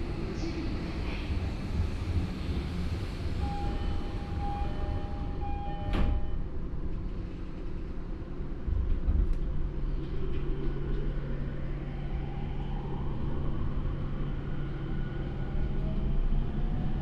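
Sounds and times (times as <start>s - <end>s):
train motor hum and whine: 0.0s - 7.4s.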